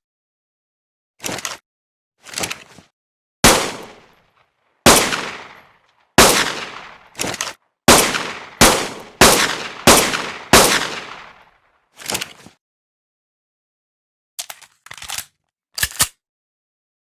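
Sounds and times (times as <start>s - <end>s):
pistol shots with echo: 3.4s - 4.1s, 4.9s - 7.2s, 7.9s - 11.5s.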